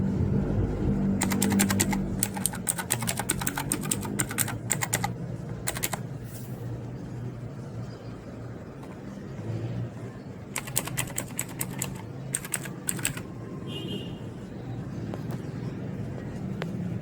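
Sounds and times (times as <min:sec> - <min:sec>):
mechanical keyboard key clicks: 0:01.2 - 0:05.1, 0:05.7 - 0:06.0, 0:10.6 - 0:13.2.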